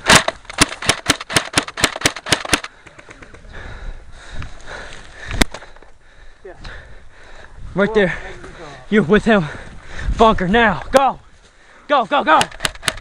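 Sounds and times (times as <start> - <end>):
airsoft rifle shots: 0.0 - 3.4, 12.4 - 13.0.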